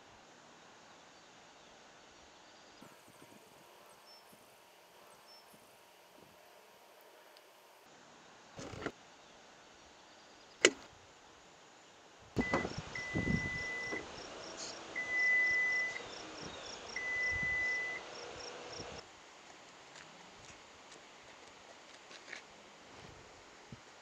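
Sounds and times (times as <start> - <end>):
sharp click: 10.6 - 10.9
electronic beep: 12.4 - 14.0, 15.0 - 16.0, 17.0 - 18.0.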